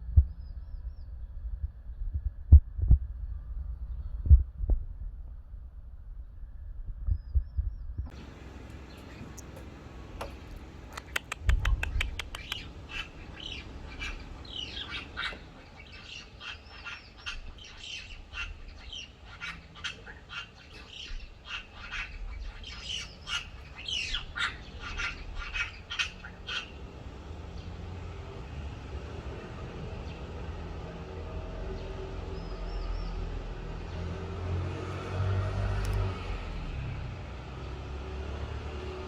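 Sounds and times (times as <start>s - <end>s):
magpie clicks: 8.1s - 18.6s.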